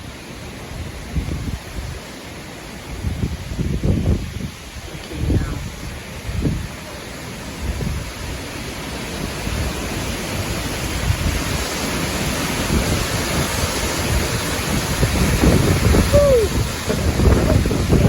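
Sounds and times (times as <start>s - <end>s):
storm wind buffeting microphone: 0.0s - 18.0s.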